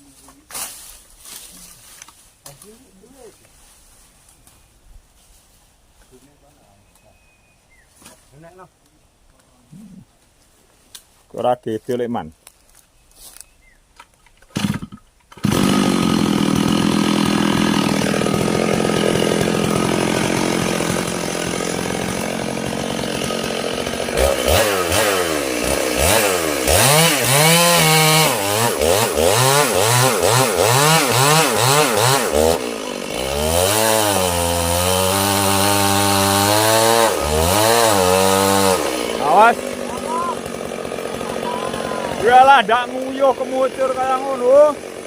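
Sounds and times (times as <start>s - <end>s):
chainsaw cutting wood: 14.4s - 45.0s
chainsaw revving: 14.5s - 45.0s.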